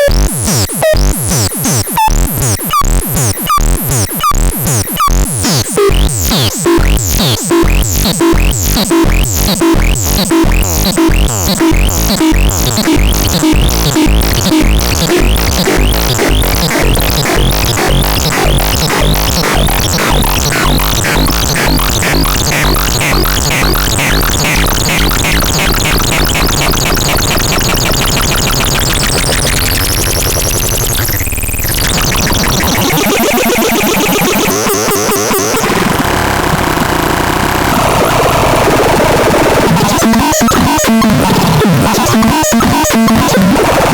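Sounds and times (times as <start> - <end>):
deep synth bass: 5.9 - 43.9
repeating synthesizer pulse: 6.0 - 35.9, 37.7 - 43.9
warbling synth tones: 10.6 - 36.0
rising and falling synth sweep: 11.4 - 36.0.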